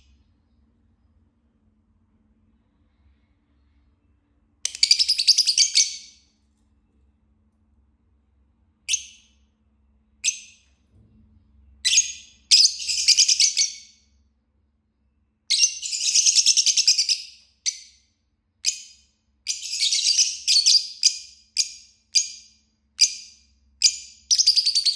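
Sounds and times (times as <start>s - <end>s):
lovebird chirping and chattering: 4.7s - 6.2s, 8.9s - 9.3s, 11.8s - 14.0s, 15.5s - 18.0s, 18.6s - 24.9s.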